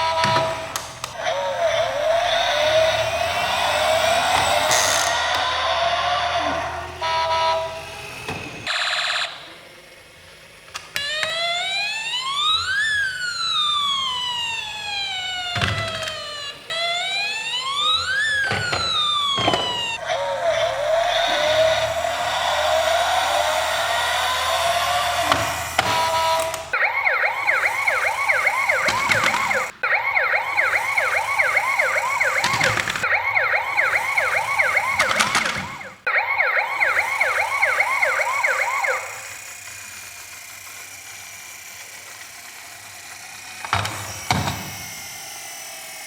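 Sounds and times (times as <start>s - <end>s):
emergency vehicle yelp siren: 0.0s - 46.0s.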